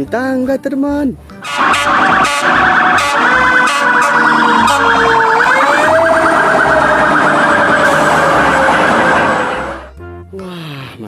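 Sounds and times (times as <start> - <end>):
fast warbling high tone: 1.4 - 9.9
emergency vehicle siren wailing: 1.4 - 10.0.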